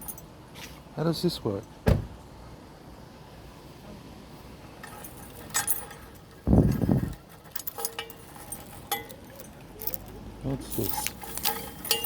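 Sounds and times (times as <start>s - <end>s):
dull low thump: 1.8s - 2.2s
screwdriver rattling on steel cable: 4.8s - 12.0s.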